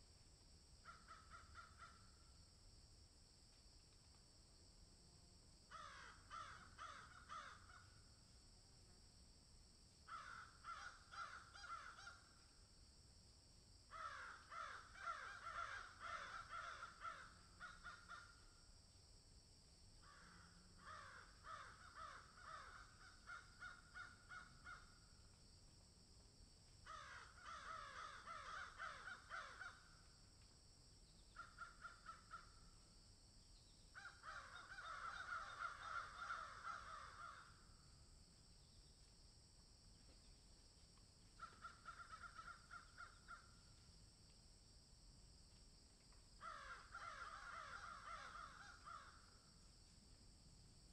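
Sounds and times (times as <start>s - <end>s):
crows cawing: 0.8s - 2.1s, 5.7s - 8.0s, 10.1s - 12.3s, 13.9s - 18.4s, 20.0s - 25.0s, 26.8s - 30.0s, 31.3s - 32.6s, 34.0s - 37.6s, 41.4s - 43.5s, 46.4s - 49.4s.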